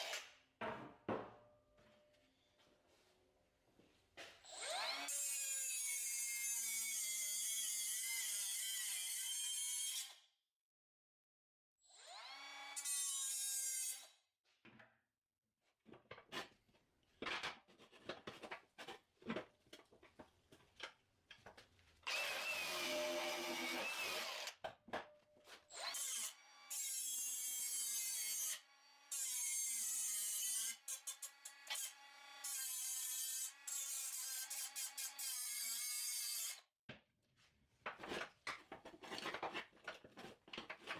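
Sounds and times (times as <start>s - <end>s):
handheld power tool running: 22.1s - 24.6s.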